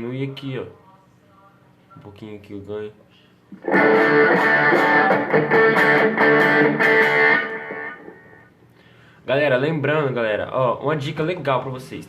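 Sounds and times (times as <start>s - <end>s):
overdriven electric guitar chords: 3.6s - 8.6s.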